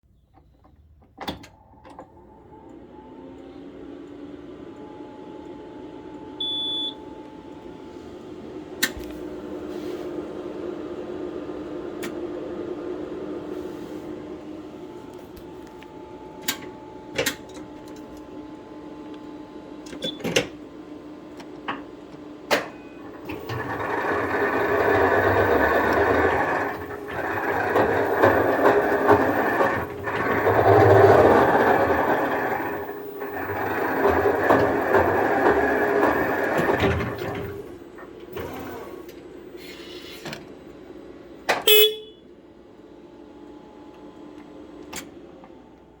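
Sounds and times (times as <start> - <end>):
electric forklift motor running: 20.8 - 40.2.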